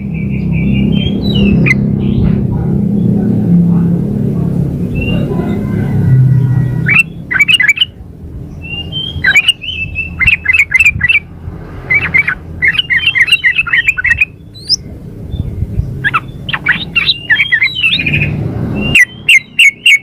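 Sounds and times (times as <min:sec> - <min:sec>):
bird chattering call: 0:04.9 - 0:08.0, 0:08.6 - 0:20.0.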